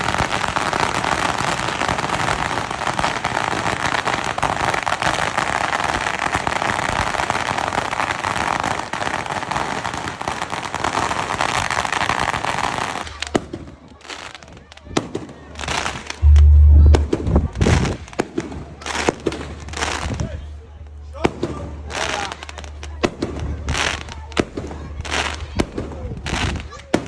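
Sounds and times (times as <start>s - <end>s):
fireworks crackling: 0.0s - 20.2s
sharp bang: 16.2s - 17.5s.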